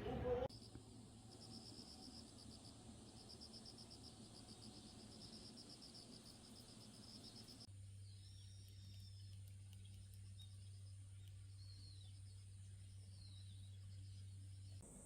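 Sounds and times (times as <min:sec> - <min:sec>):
person's voice: 0:00.0 - 0:00.5
faint insect chirping: 0:00.5 - 0:15.0.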